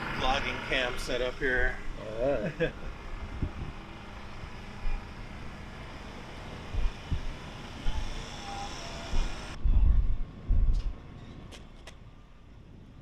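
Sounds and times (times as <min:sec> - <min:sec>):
drone motors whining: 0:00.0 - 0:11.5
wind buffeting microphone: 0:02.9 - 0:08.2, 0:09.1 - 0:13.0.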